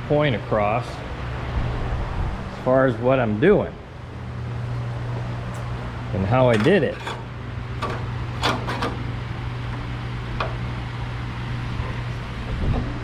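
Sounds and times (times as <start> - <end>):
low background hum: 0.0 - 13.0
clicks of sheet metal and tools: 6.3 - 9.8.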